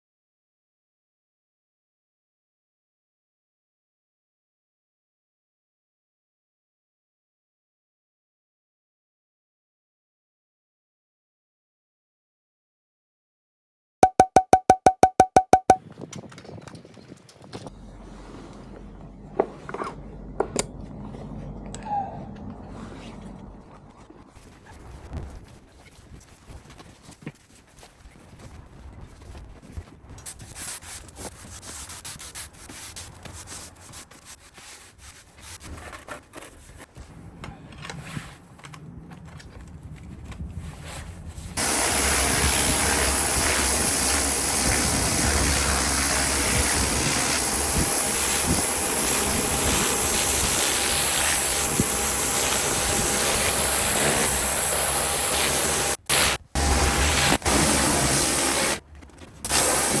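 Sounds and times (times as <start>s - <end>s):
pressure washer spraying: 41.6s - 58.8s, 59.5s - 60.0s.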